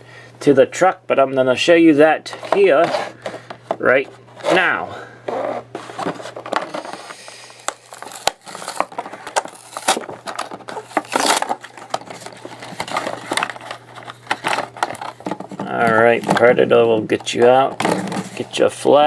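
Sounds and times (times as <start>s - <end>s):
plastic packaging crinkling: 5.4s - 18.5s.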